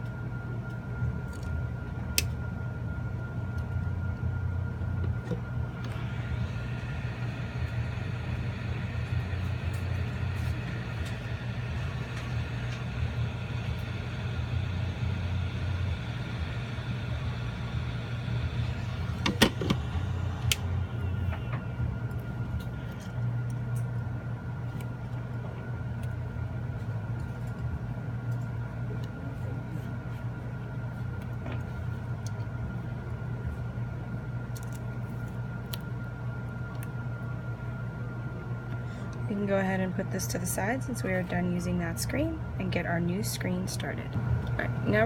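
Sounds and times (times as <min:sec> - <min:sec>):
low steady hum: 0:00.0 - 0:45.0
heat gun whirring: 0:05.7 - 0:21.7.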